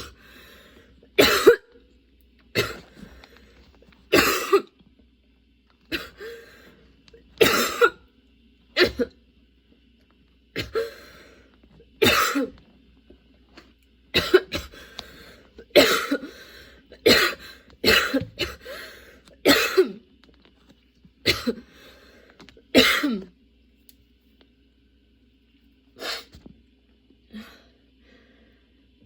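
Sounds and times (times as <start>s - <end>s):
woman coughing: 1.2s - 1.7s, 2.6s - 2.9s, 4.1s - 4.8s, 7.4s - 8.0s, 8.8s - 9.2s, 12.0s - 12.5s, 14.1s - 14.7s, 15.7s - 16.3s, 17.0s - 18.8s, 19.4s - 20.0s, 21.2s - 21.7s, 22.7s - 23.3s.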